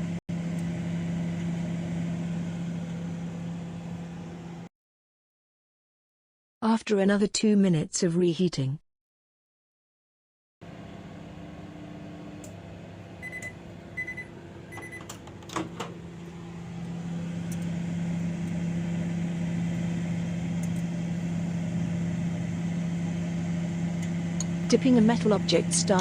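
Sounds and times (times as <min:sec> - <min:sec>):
microwave humming: 0:00.0 - 0:04.7, 0:10.6 - 0:26.0
microwave beeps: 0:12.1 - 0:15.8
microwave clunk: 0:12.3 - 0:18.7.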